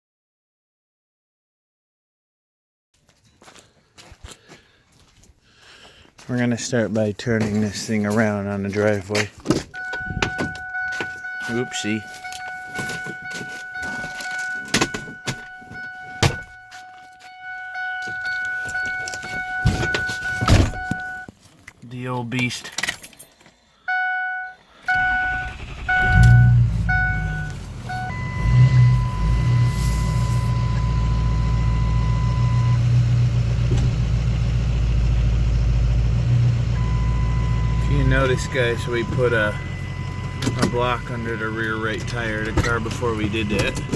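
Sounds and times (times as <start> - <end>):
car manoeuvring: 9.3 - 21.7, 22.7 - 43.9
thin electronic tone: 9.8 - 21.3, 23.6 - 32.8, 36.7 - 43.9
vehicle engine idling: 9.8 - 21.3, 23.9 - 43.9
steady high whine: 23.4 - 43.9.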